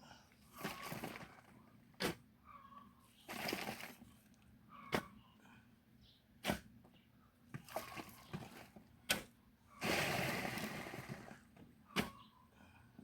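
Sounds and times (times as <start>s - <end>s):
loose soil scraped and thrown: 0.5s - 2.2s, 3.2s - 4.0s, 7.6s - 12.2s
digging tool striking soil: 6.4s - 6.7s, 9.1s - 9.3s.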